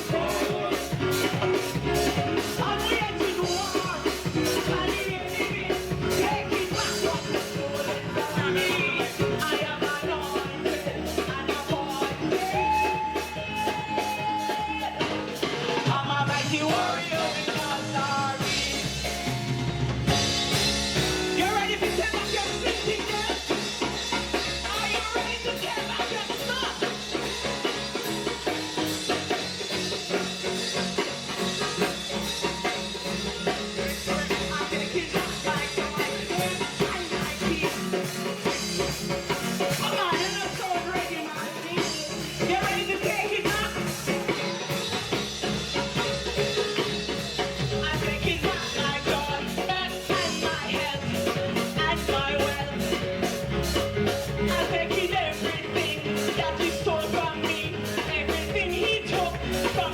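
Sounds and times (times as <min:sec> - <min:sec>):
singing: 0:00.0 - 0:19.3, 0:46.8 - 0:53.4, 0:54.2 - 0:59.9
drum kit beat: 0:00.0 - 0:59.9
gospel band playing: 0:00.0 - 0:59.9.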